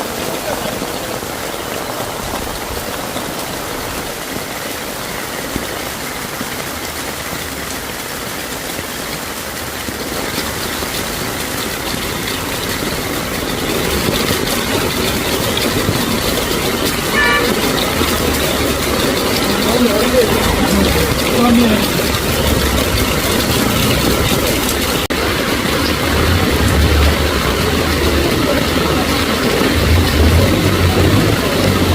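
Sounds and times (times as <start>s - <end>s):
heavy rain hissing: 0.0s - 31.9s
vehicle engines in traffic: 0.0s - 31.9s
short high tone: 17.1s - 17.7s.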